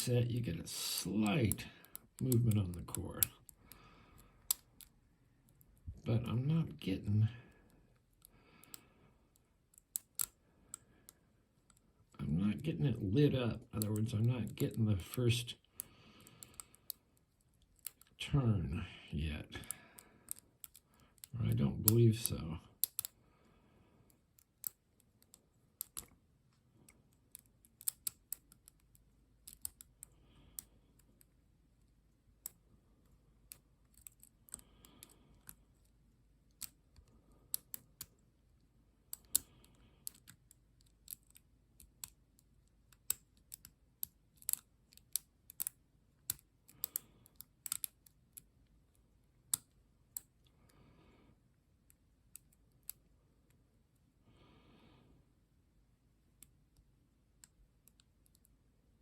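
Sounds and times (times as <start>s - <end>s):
lock pick clicking in lock: 9.7s - 10.4s, 20.3s - 21.3s, 22.8s - 23.2s, 24.4s - 26.1s, 27.3s - 30.7s, 42.9s - 48.4s.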